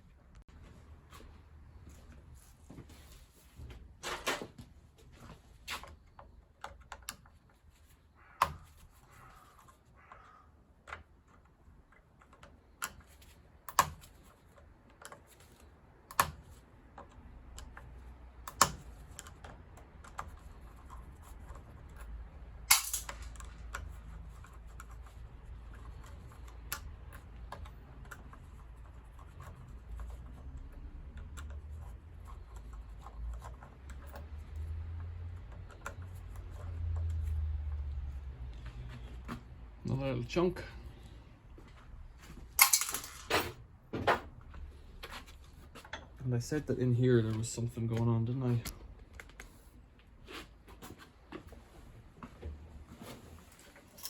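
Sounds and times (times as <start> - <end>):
tools and metal parts clacking: 18.5 - 28.6, 42.6 - 44.3.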